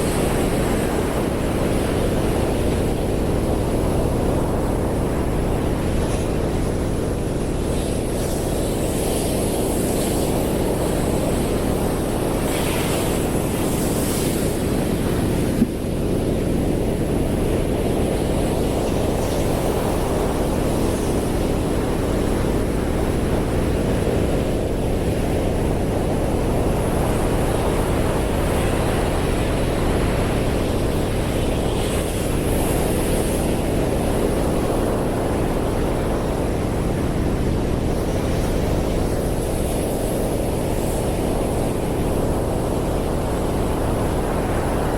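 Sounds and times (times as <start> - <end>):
surf roar of waves: 0.0 - 44.9.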